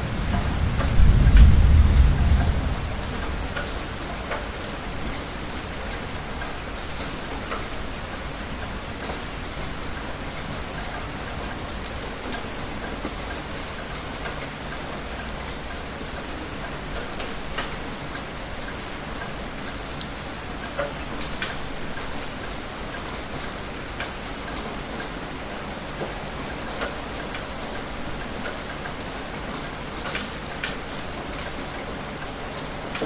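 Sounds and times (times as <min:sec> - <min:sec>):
heavy rain falling: 0:00.0 - 0:33.0.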